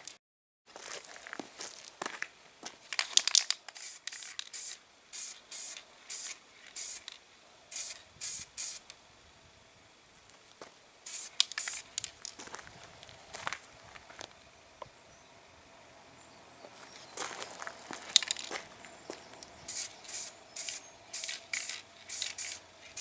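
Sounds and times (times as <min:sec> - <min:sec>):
spray can hissing bursts: 0:03.7 - 0:09.0, 0:11.0 - 0:12.2, 0:19.6 - 0:23.0.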